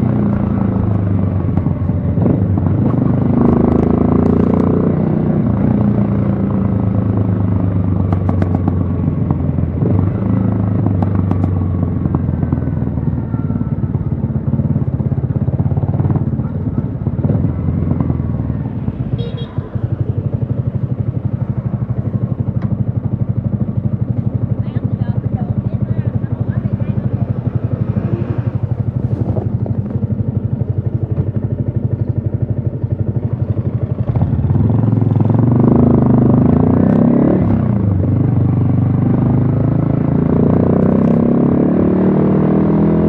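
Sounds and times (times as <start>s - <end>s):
motorcycle engine idling: 0.0s - 3.4s, 5.4s - 36.4s.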